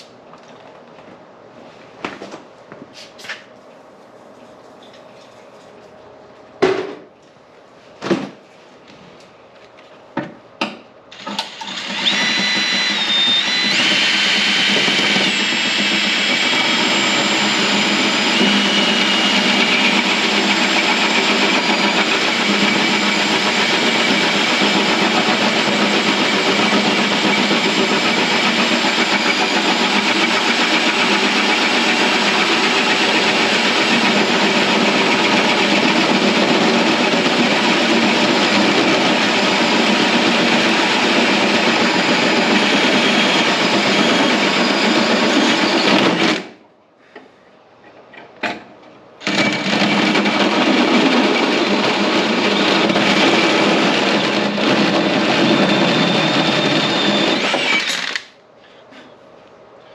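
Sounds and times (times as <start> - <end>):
electric drill cutting sheet metal: 11.1 - 46.6, 49.2 - 58.4.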